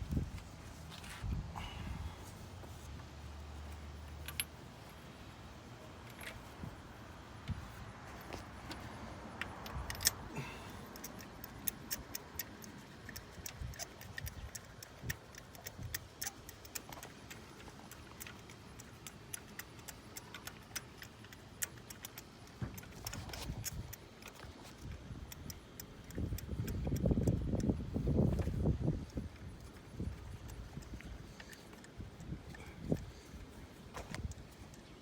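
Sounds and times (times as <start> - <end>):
hand tools clicking and clinking: 8.1 - 27.8.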